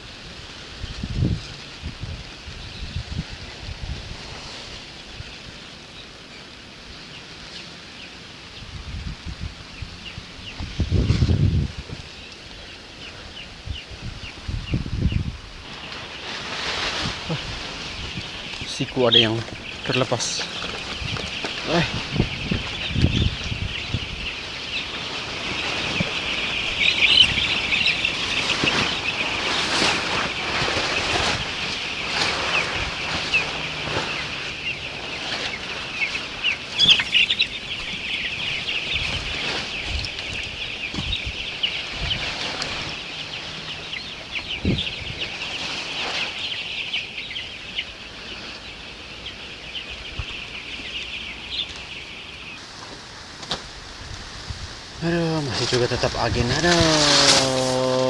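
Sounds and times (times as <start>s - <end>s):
chickens chattering: 0.0s - 58.0s
strong wind gusts: 0.7s - 5.2s, 8.6s - 12.2s, 13.4s - 15.7s, 20.8s - 34.3s.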